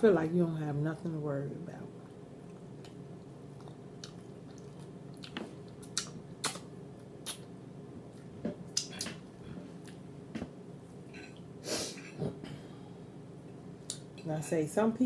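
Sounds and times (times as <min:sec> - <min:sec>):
faint steady hum: 0:00.0 - 0:15.0
chewing with wet mouth smacks: 0:02.0 - 0:07.5.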